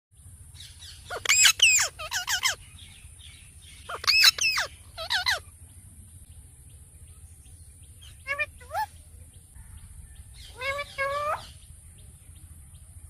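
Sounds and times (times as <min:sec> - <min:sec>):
parrot calling: 0:00.8 - 0:02.7, 0:03.8 - 0:05.5, 0:08.0 - 0:09.0, 0:10.4 - 0:11.7.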